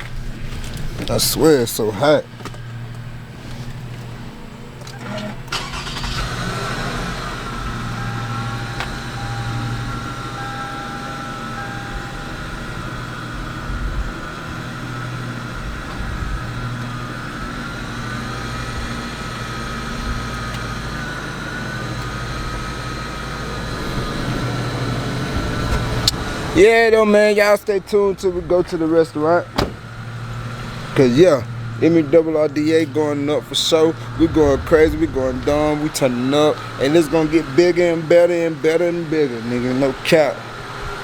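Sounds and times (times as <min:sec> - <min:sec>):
car engine humming inside cabin: 0:00.0 - 0:41.0
faint wavering whine: 0:06.6 - 0:26.1.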